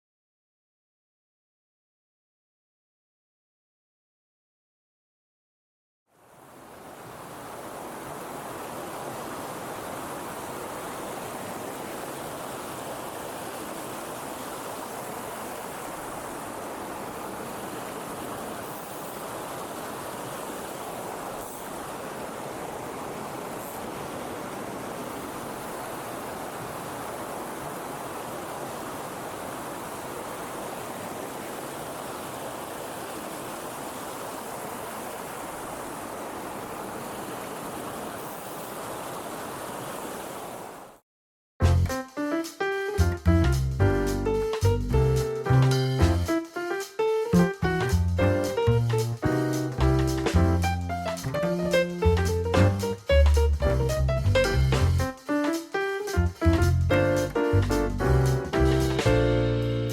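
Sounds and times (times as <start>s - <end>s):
mountain stream rushing: 6.1s - 41.0s.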